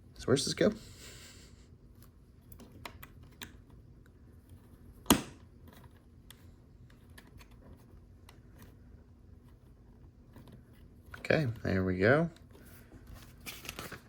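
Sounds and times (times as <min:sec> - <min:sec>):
sharp plastic snap: 0:05.0 - 0:05.5.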